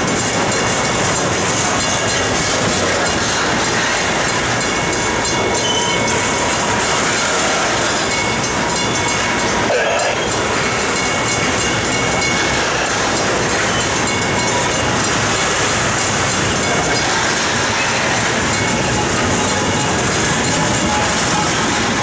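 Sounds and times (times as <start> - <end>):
train wheels clattering on rails: 0.0 - 22.0
faint high wheel squeal: 3.9 - 6.4.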